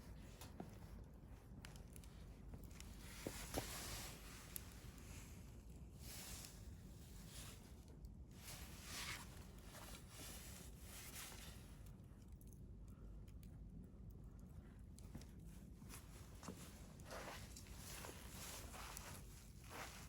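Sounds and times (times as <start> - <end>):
fire crackles: 0.1 - 20.0
campfire hissing: 3.0 - 5.0, 5.9 - 7.6.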